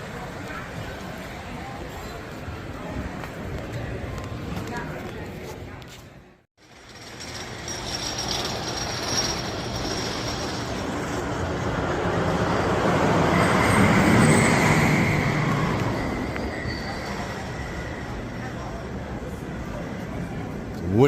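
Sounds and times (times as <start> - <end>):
high wheel squeal: 6.8 - 18.8
roller coaster train rumbling: 6.8 - 21.0.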